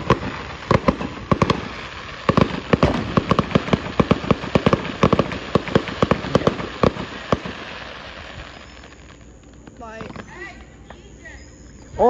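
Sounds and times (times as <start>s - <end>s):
fireworks cracking: 2.8s - 6.4s.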